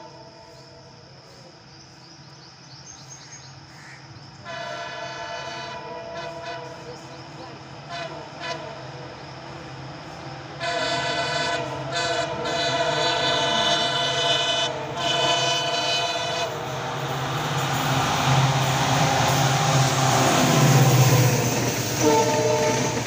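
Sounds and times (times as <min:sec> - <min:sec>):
rush of approaching train: 0:00.0 - 0:23.0
locomotive horn: 0:04.4 - 0:08.9, 0:10.6 - 0:16.7, 0:19.0 - 0:23.0.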